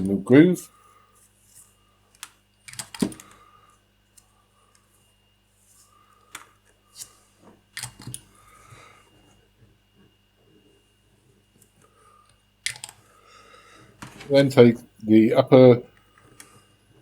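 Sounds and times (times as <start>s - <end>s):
plastic parts clicking and tapping: 2.1s - 3.4s, 12.6s - 13.0s.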